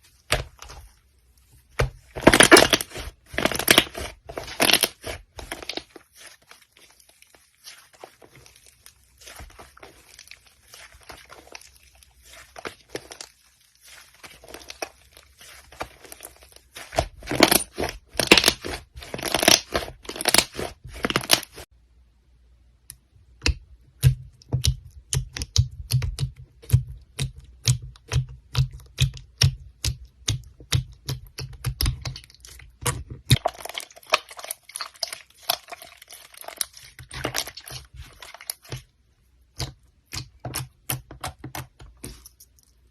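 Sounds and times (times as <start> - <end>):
slime crackling and popping: 2.0 - 21.7.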